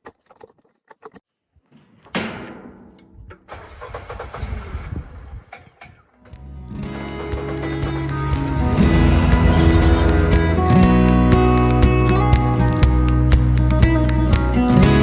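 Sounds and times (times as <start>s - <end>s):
engine starting and rumbling: 3.3s - 11.6s
music: 6.3s - 15.0s.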